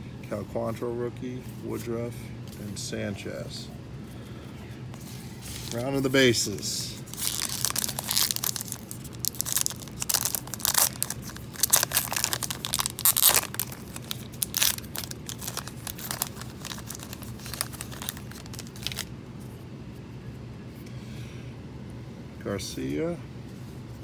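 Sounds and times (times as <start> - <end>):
low steady hum: 0.0 - 24.0
card pack wrapper crinkling: 5.4 - 19.1.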